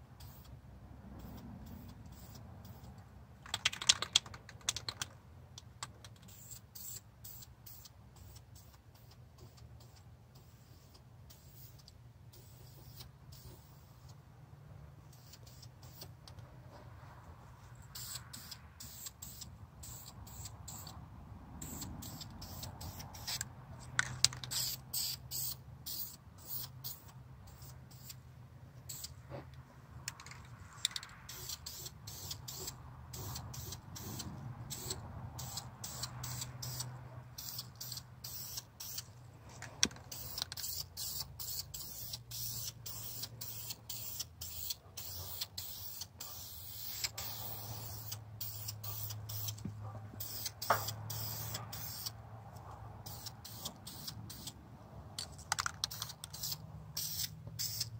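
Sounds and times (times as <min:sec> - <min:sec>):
sharp clicks: 0:02.9 - 0:06.3
aerosol can spraying: 0:21.6 - 0:23.5, 0:24.4 - 0:28.2, 0:31.3 - 0:39.0, 0:40.1 - 0:49.6, 0:50.2 - 0:52.1, 0:53.1 - 0:54.6, 0:55.6 - 0:57.9.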